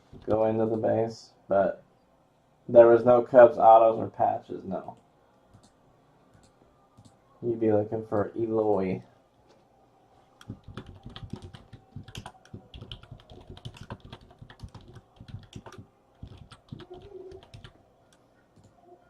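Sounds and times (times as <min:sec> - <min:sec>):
keyboard typing clicks: 0:10.4 - 0:17.7.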